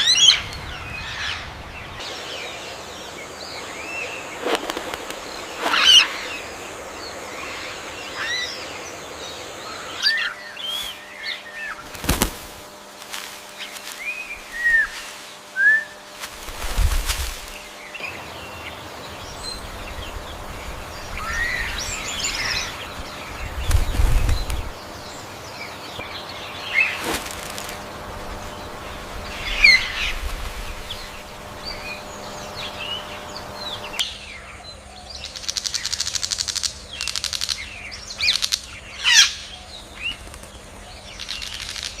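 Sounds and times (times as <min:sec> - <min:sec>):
birds chirping: 0:00.0 - 0:42.0
rapid wing fluttering: 0:02.0 - 0:08.7, 0:09.5 - 0:34.0, 0:40.0 - 0:42.0
wings flapping: 0:03.9 - 0:06.7, 0:11.7 - 0:34.0, 0:40.0 - 0:42.0.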